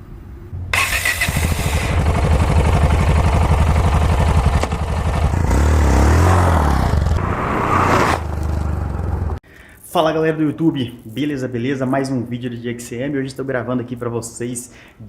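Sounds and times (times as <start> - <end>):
motorcycle engine revving: 0.7 - 9.4.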